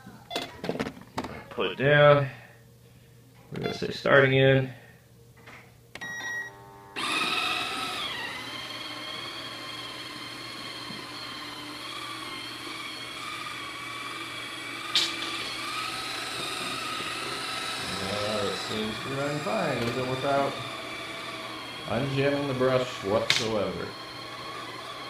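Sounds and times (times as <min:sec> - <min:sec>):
robotic vacuum motor whine: 0:06.3 - 0:25.0.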